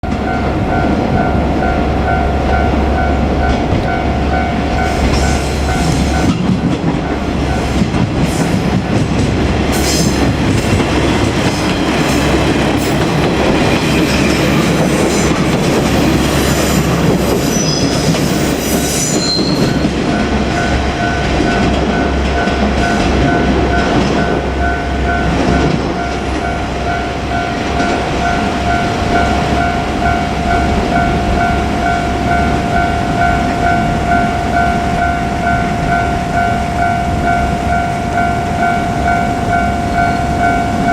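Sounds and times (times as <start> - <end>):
train wheels rumbling: 0.0 - 40.9
high wheel squeal: 16.2 - 20.0
level crossing bell ringing: 19.6 - 40.9.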